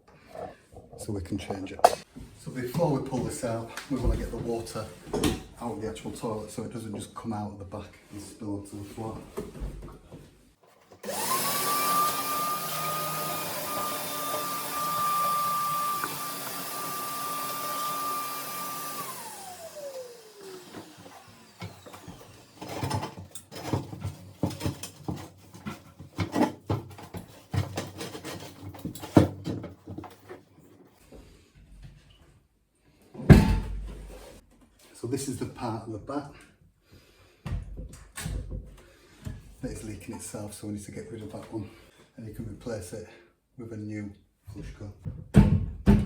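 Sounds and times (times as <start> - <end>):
wet-and-dry vacuum motor whining: 11.0 - 23.0
knocks and clunks: 45.0 - 46.0.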